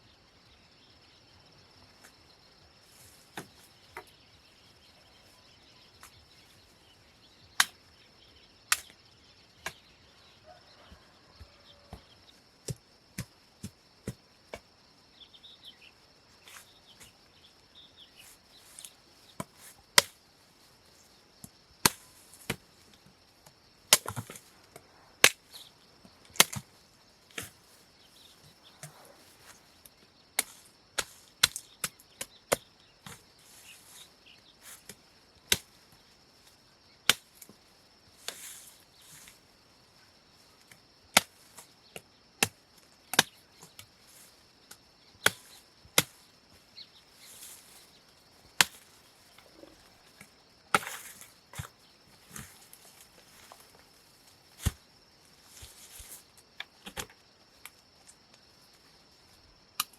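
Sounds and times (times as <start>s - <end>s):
blade chopping woody stems: 11.4s - 14.7s, 21.4s - 22.6s, 23.9s - 25.7s, 26.3s - 27.6s, 30.4s - 33.3s, 37.1s - 37.6s, 40.7s - 43.9s, 44.6s - 46.6s, 48.4s - 53.7s, 54.5s - 54.9s
rustling: 45.3s - 57.1s.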